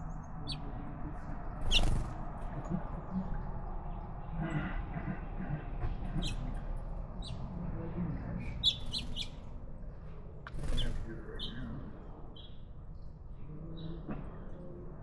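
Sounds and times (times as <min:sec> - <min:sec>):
small birds chirping: 0:00.0 - 0:00.8, 0:01.5 - 0:02.6, 0:06.1 - 0:07.5, 0:08.4 - 0:09.6, 0:10.5 - 0:11.7.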